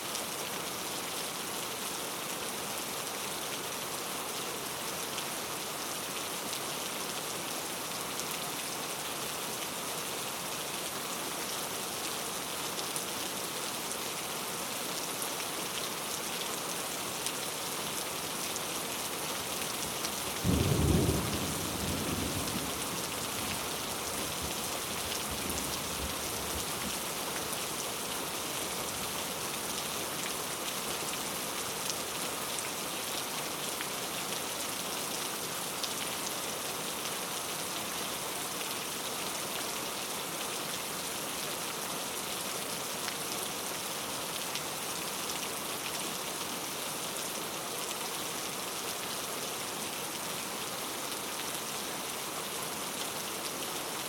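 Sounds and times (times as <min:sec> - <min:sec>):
rain falling on foliage: 0:00.0 - 0:54.0
louder single raindrops: 0:20.0 - 0:23.7.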